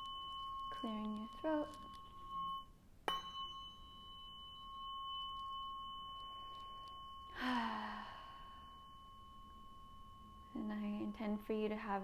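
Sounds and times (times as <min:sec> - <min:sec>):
tuning fork ringing: 0:00.0 - 0:12.0
person sighing out-breath: 0:07.4 - 0:08.5.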